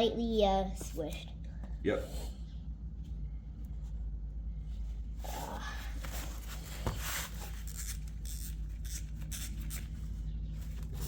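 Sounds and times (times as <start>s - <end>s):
steady low hum: 0.0s - 11.0s
tools rubbing and scraping: 5.2s - 10.1s.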